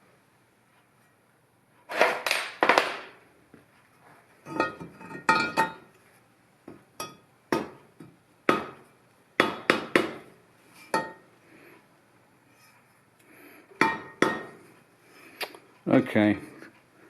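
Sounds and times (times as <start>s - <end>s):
hammer tapping on metal: 6.7s - 10.3s, 10.9s - 11.2s, 13.8s - 14.6s.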